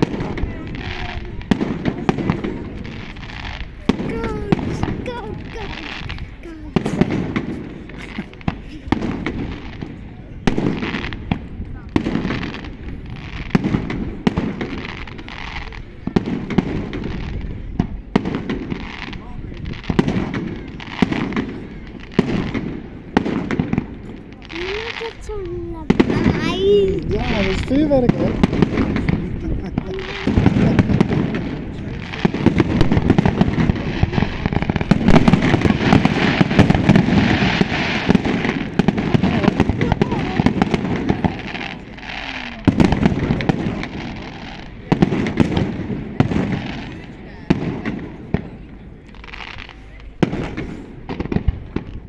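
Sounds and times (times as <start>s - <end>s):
fireworks bursting with bangs: 0.0s - 52.0s
fireworks crackling hiss: 0.0s - 52.0s.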